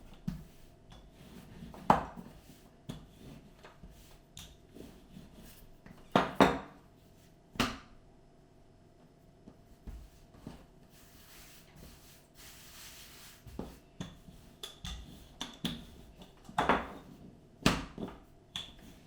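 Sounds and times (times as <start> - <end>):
dough knocks and thumps: 7.5 - 8.0, 13.4 - 19.0
hands rubbing bread dough: 9.5 - 16.3.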